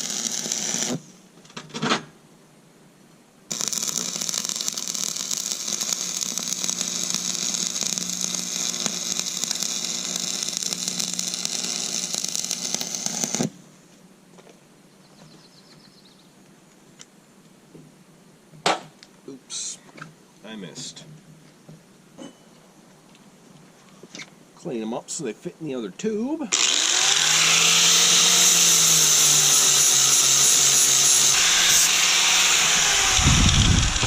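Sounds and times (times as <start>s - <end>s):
metal-shop tool hissing and humming: 26.5s - 34.0s.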